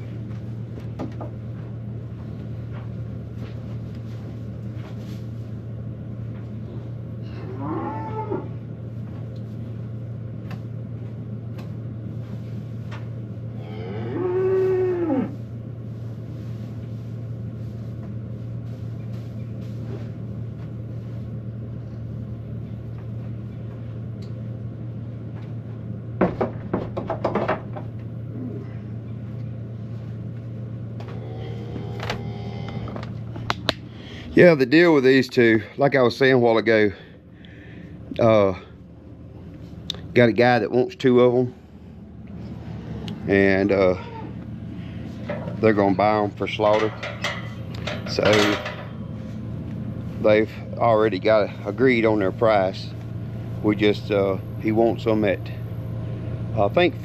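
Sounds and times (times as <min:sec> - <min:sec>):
steady low hum: 0:00.0 - 0:57.0
cattle mooing: 0:07.2 - 0:08.6, 0:13.6 - 0:15.4, 0:31.0 - 0:33.2.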